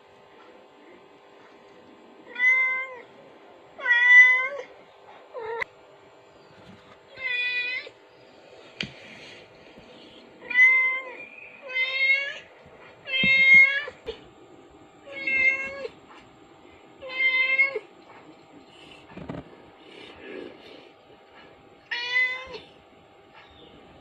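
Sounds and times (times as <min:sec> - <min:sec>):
cat meowing: 0:21.9 - 0:22.7.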